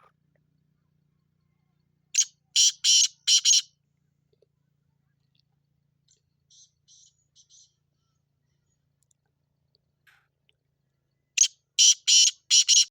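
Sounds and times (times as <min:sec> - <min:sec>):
francolin calling with rasping notes: 0:02.2 - 0:03.7, 0:11.4 - 0:12.9.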